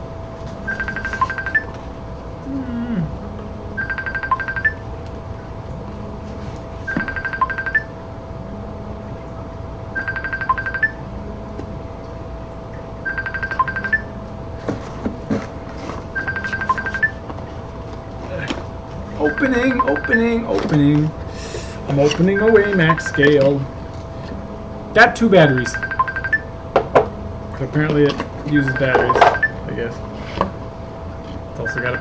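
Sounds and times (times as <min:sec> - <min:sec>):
steady hum: 0:00.0 - 0:32.0
electronic telephone ringtone: 0:00.7 - 0:01.8, 0:03.8 - 0:04.9, 0:06.9 - 0:08.0, 0:10.0 - 0:11.1, 0:13.0 - 0:14.2, 0:16.2 - 0:17.2, 0:19.2 - 0:20.4, 0:22.4 - 0:23.6, 0:25.4 - 0:26.5, 0:28.6 - 0:29.6, 0:31.7 - 0:32.0.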